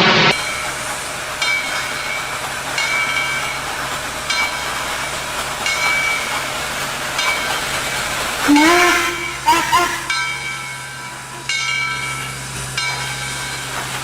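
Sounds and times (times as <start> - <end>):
train running: 0.0 - 14.0
high-pitched squeal: 8.4 - 10.7.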